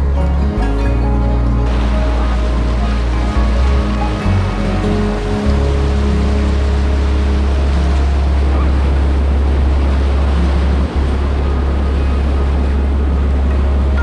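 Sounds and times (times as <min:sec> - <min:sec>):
low rumble on microphone: 0:00.0 - 0:14.0
rushing whitewater: 0:00.0 - 0:14.0.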